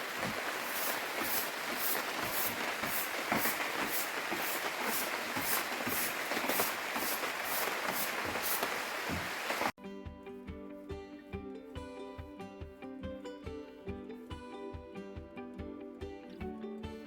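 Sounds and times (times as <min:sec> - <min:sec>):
steady rain falling: 0:00.0 - 0:09.8.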